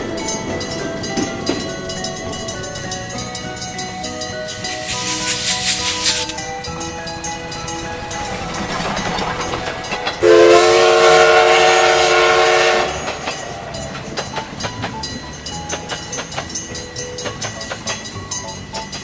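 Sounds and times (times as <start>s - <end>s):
train wheels clickety-clack: 0.0s - 19.0s
train horn chord: 9.9s - 13.4s.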